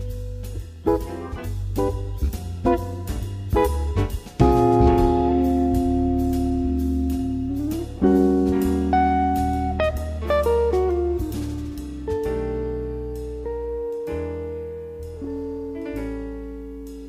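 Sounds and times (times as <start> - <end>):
guitar music with bass line: 0.0 - 17.0.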